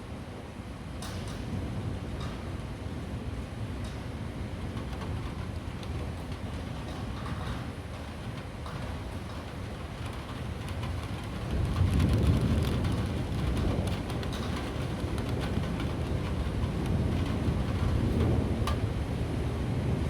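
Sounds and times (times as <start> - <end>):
rain falling: 9.1 - 19.0
rolling thunder: 11.5 - 20.0.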